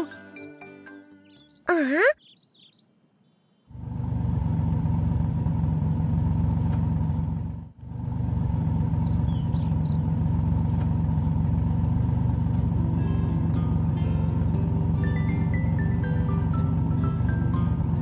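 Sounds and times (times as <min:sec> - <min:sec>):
cartoon truck engine drone: 0:03.7 - 0:18.0.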